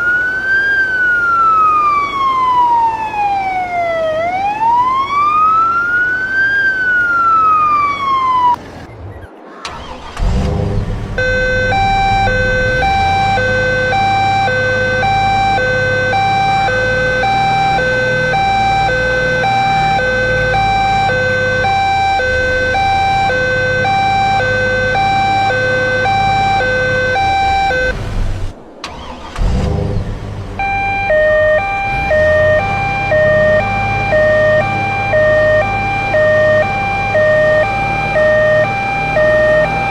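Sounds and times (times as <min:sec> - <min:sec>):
low engine rumble: 0:07.5 - 0:39.9
musical truck horn: 0:11.2 - 0:27.9.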